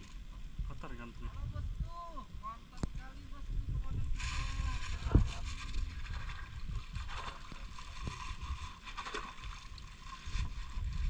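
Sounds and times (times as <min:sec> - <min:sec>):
wind rumbling on microphone: 0:00.0 - 0:11.0
water lapping against boat: 0:04.2 - 0:11.0.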